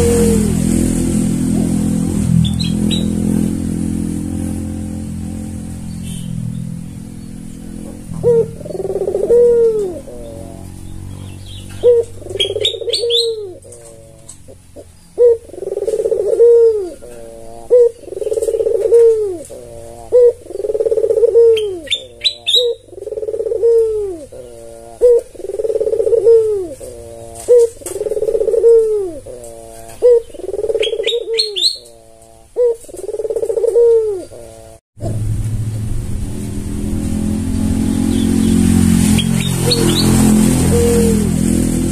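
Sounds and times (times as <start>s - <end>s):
dove cooing: 0.0s - 6.4s, 7.0s - 34.8s, 38.0s - 41.9s.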